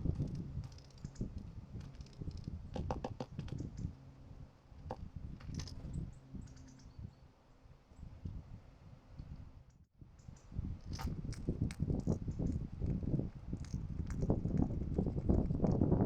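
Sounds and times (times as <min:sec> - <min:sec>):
bird beaks tapping on feeder: 0:02.7 - 0:03.6.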